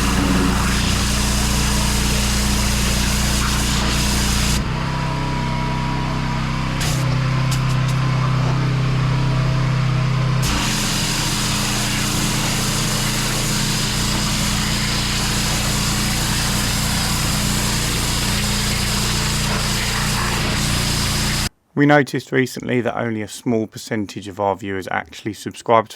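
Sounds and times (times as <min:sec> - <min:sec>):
high-pressure water spray hiss: 0:00.0 - 0:04.6, 0:10.4 - 0:21.5
pressure washer engine running: 0:00.0 - 0:21.5.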